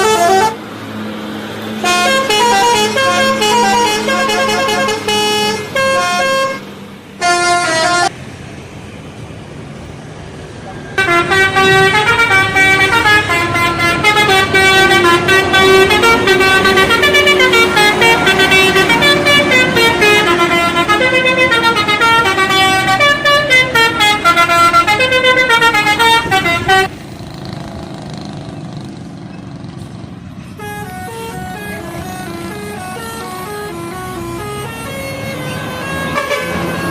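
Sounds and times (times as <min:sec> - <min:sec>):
bus horn playing a melody: 0:00.0 - 0:00.8, 0:01.6 - 0:08.1, 0:11.0 - 0:26.9, 0:30.5 - 0:36.9.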